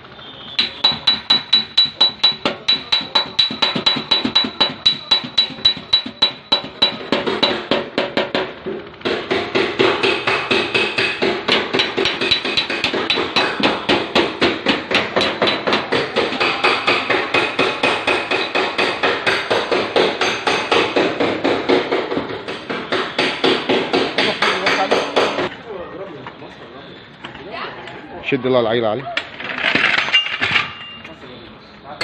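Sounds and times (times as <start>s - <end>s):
body hammer striking steel panel: 0.6s - 25.5s.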